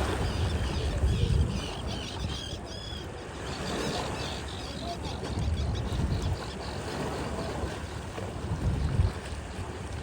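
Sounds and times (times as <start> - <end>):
wind buffeting microphone: 0.0 - 2.7, 5.1 - 10.0.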